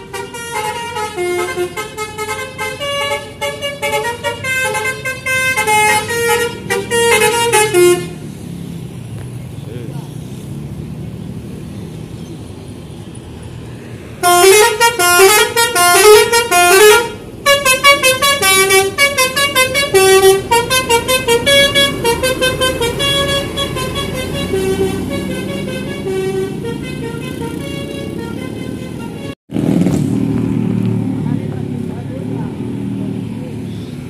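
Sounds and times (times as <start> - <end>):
musical bus air horn melody: 0.0 - 8.3, 14.2 - 29.4.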